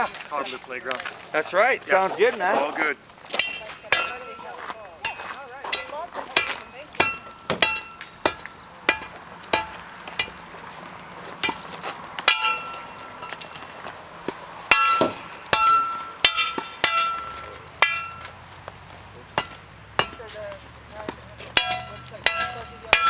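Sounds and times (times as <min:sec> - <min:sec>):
hammer striking metal: 0:03.4 - 0:10.5, 0:11.4 - 0:13.8, 0:14.7 - 0:18.4, 0:19.3 - 0:20.6, 0:21.5 - 0:23.0.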